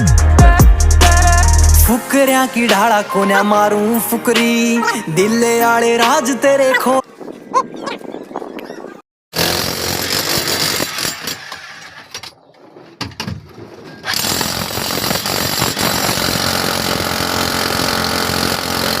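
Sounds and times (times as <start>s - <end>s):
power tool running: 9.4s - 12.0s, 14.1s - 19.0s.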